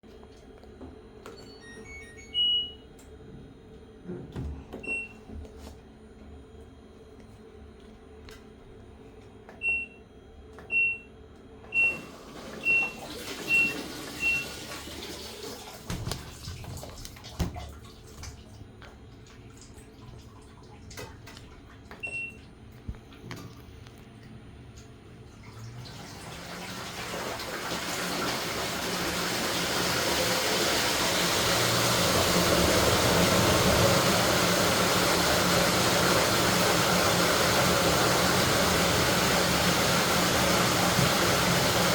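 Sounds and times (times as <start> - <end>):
washing machine beeps: 1.2 - 3.0, 4.6 - 5.4, 9.6 - 15.9, 22.0 - 22.6, 25.6 - 41.9
water rushing into tub: 11.8 - 18.5, 25.4 - 41.9.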